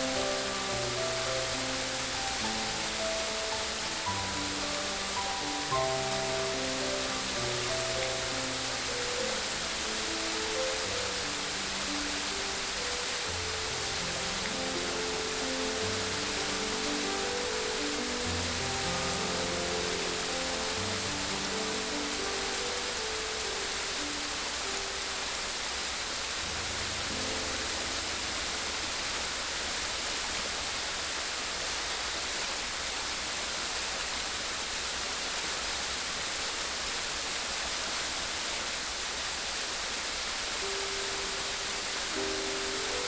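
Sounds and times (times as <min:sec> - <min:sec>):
soft background music: 0:00.0 - 0:31.3, 0:40.4 - 0:43.0
running water: 0:00.0 - 0:43.0.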